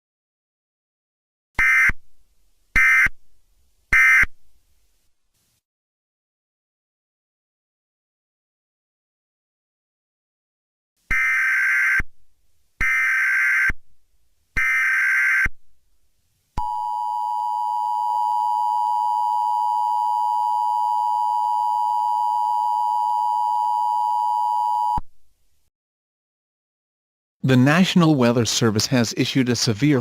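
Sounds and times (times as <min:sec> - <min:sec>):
steady warning alarm tone: 0:11.1 - 0:12.0, 0:12.8 - 0:13.7, 0:14.6 - 0:15.5, 0:16.6 - 0:25.0.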